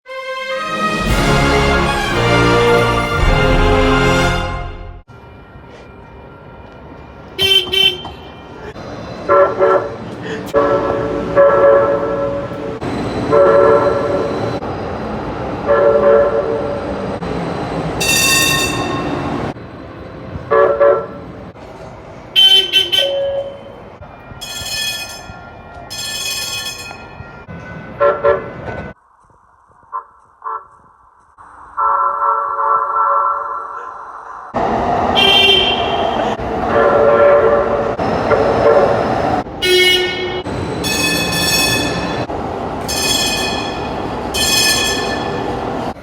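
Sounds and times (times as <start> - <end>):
train horn short blasts: 7.4 - 8.2, 18.0 - 19.3, 22.4 - 23.5, 35.2 - 37.6, 39.6 - 42.2, 42.9 - 45.5.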